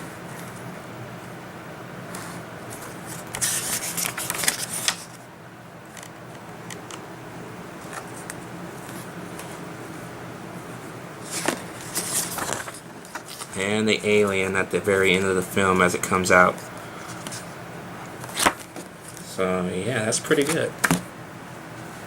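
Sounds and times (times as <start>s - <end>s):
faint steady hum: 0.0s - 22.0s
book pages rustling: 2.1s - 5.2s, 7.8s - 10.0s, 11.2s - 13.6s, 16.5s - 17.6s, 18.2s - 19.3s, 20.3s - 21.0s.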